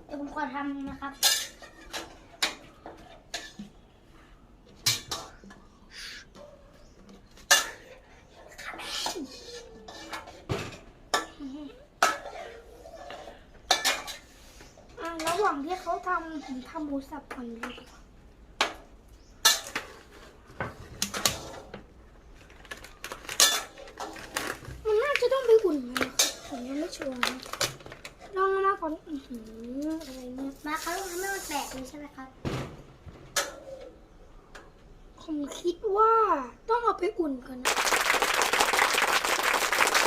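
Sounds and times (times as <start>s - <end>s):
dishes and utensils clinking: 1.1s - 3.7s, 7.3s - 8.0s, 12.0s - 14.3s, 19.4s - 21.7s, 23.2s - 24.5s
metal utensils clattering on cookware: 1.1s - 3.7s, 4.8s - 5.6s, 7.4s - 8.0s, 9.1s - 11.4s, 12.0s - 14.4s, 15.0s - 17.8s, 19.4s - 21.8s, 23.2s - 28.4s.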